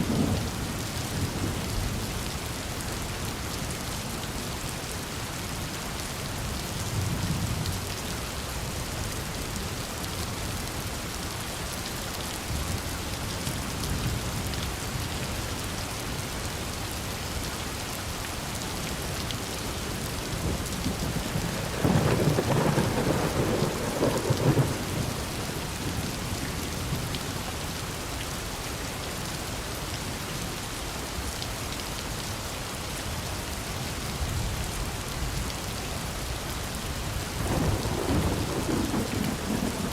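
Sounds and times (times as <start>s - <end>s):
steady rain falling: 0.0s - 39.9s
thunder rolling: 20.8s - 25.3s, 37.4s - 39.9s.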